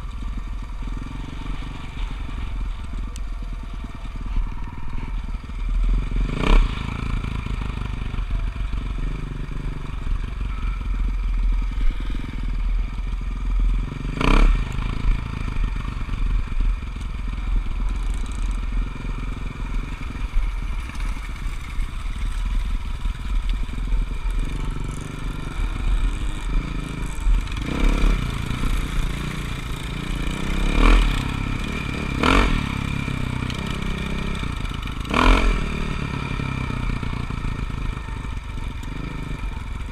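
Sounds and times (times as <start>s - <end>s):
dirt bike engine revving: 5.7s - 8.0s, 13.8s - 15.6s, 24.4s - 39.9s.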